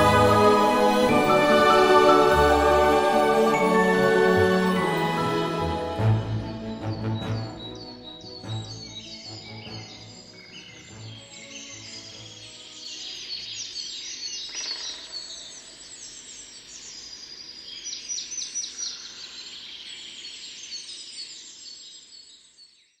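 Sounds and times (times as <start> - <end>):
birds chirping and singing: 5.7 - 21.8.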